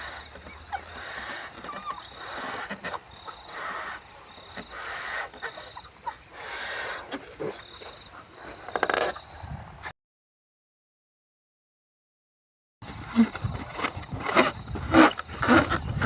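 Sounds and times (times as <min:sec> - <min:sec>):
rubber balloon squeaking: 0:13.0 - 0:16.0.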